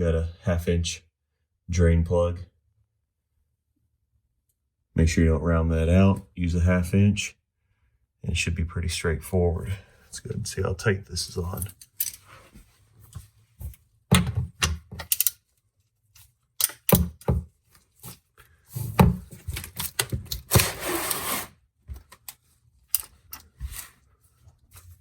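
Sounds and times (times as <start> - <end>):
ratchet clicks: 15.0 - 15.4.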